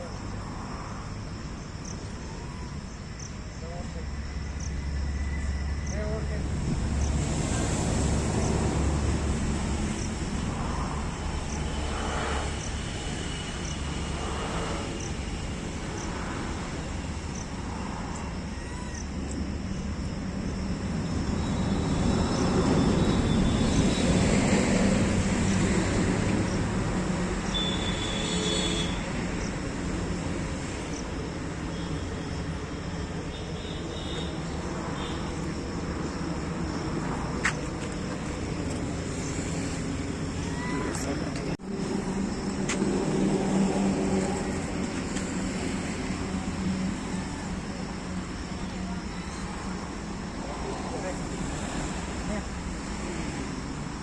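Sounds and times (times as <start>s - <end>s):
traffic rumble: 0.0s - 54.0s
vehicle passing: 5.9s - 18.1s.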